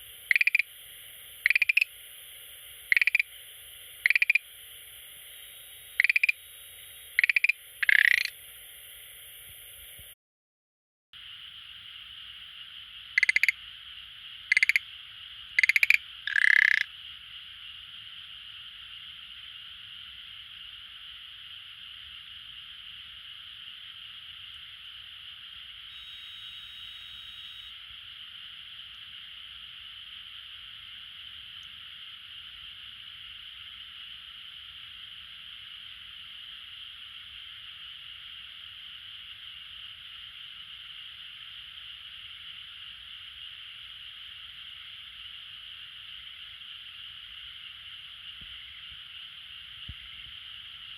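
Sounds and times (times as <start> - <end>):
tree frog rattling calls: 0.0 - 0.7, 1.4 - 2.0, 2.8 - 3.3, 4.0 - 4.4, 5.9 - 6.4, 7.1 - 8.4, 13.2 - 13.6, 14.5 - 14.8, 15.5 - 16.9
steady high hiss: 0.0 - 10.2, 11.2 - 50.9.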